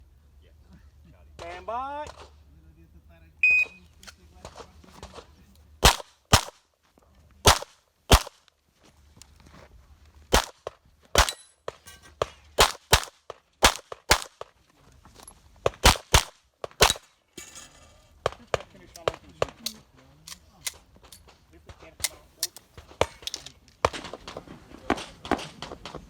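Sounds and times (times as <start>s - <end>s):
pistol shots in rapid pairs: 5.8s - 6.6s, 7.5s - 8.4s, 10.3s - 11.4s, 12.6s - 14.4s, 15.8s - 17.0s.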